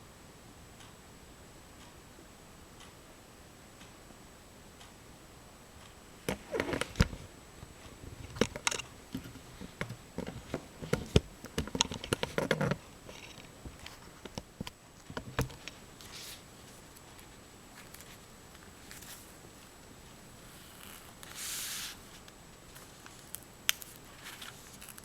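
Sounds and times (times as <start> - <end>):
pastels tapping and scratching paper: 8.2 - 14.4.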